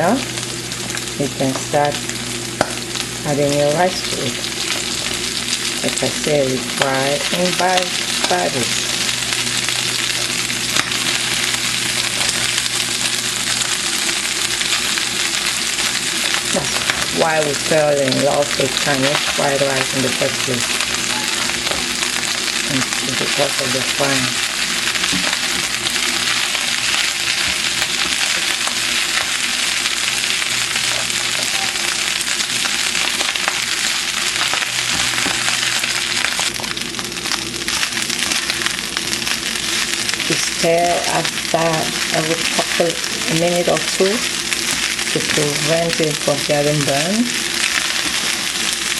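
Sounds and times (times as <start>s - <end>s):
food sizzling in a frying pan: 0.0s - 48.9s.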